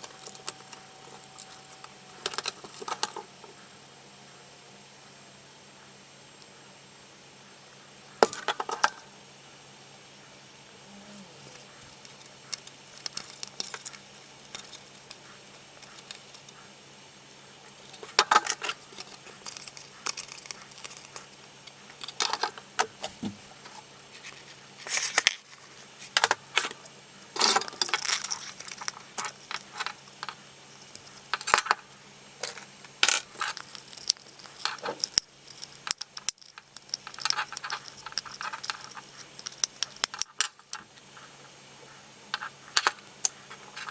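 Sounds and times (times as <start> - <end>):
plastic and metal parts clicking: 11.9 - 16.5, 32.4 - 40.8.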